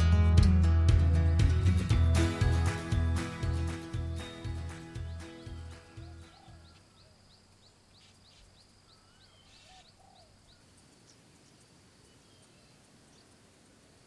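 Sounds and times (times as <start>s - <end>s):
low hiss: 1.5s - 14.0s
soft lower whistled calls: 3.8s - 14.0s.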